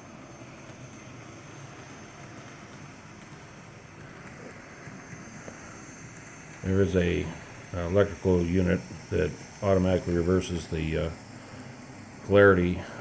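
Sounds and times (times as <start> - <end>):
model train rattle and whir: 0.0 - 7.2.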